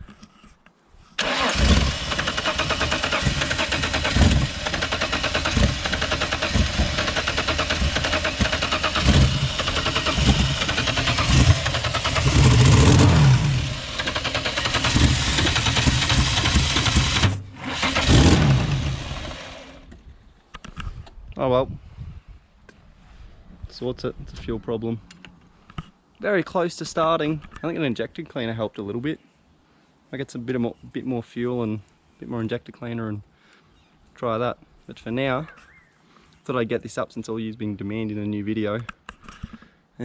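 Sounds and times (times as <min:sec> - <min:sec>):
car engine cranking on starter: 0:01.2 - 0:19.9.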